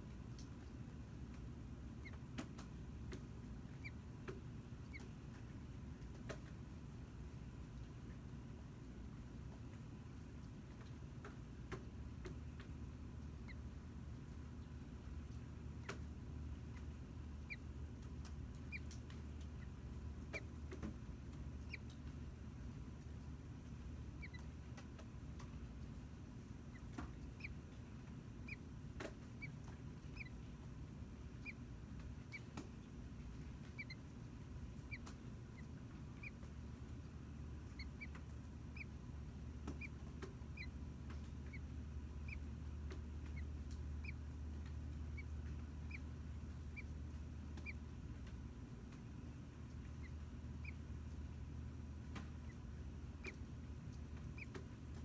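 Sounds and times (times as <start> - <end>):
nestlings peeping: 2.0 - 2.4, 3.1 - 5.4, 14.4 - 55.0
steady low hum: 11.7 - 55.0.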